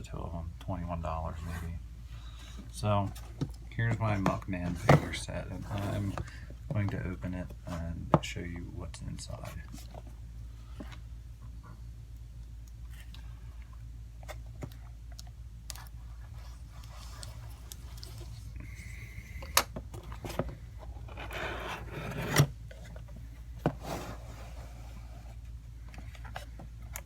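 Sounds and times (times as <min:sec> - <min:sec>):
cardboard rubbing and scraping: 0:04.6 - 0:06.3, 0:20.1 - 0:23.0, 0:23.6 - 0:25.5.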